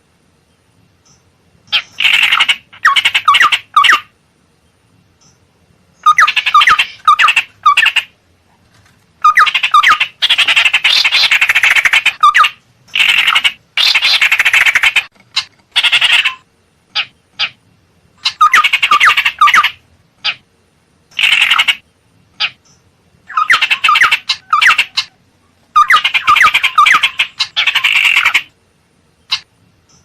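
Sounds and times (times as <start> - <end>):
bird chattering rattles: 1.1 - 4.1, 6.0 - 17.6, 18.2 - 20.4, 21.1 - 21.8, 22.4 - 25.2, 25.8 - 28.5, 29.3 - 30.0.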